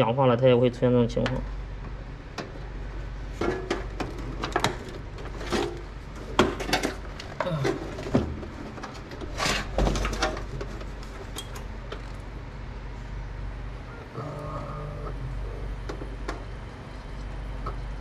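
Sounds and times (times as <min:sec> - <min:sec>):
steady low hum: 0:00.0 - 0:18.0
clicks and knocks of computer parts: 0:03.4 - 0:12.2.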